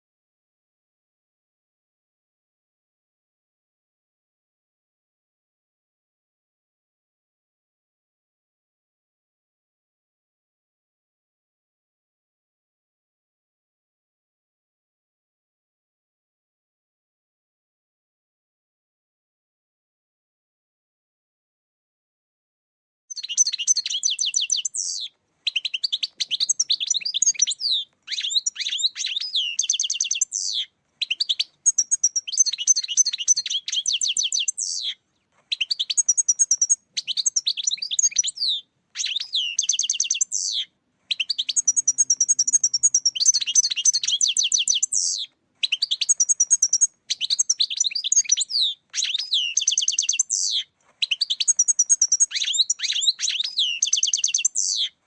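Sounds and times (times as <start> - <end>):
goldfinch twittering song: 23.1 - 54.9.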